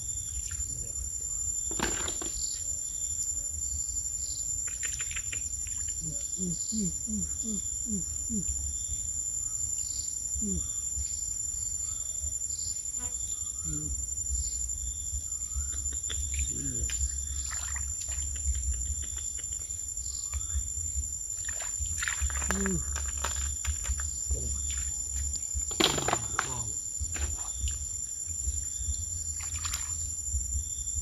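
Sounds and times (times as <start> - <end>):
crickets trilling: 0.0 - 31.0
soft pulsing chirp: 3.0 - 23.0
short low falling calls: 6.0 - 8.6, 15.5 - 17.2
constant low rumble: 13.3 - 31.0.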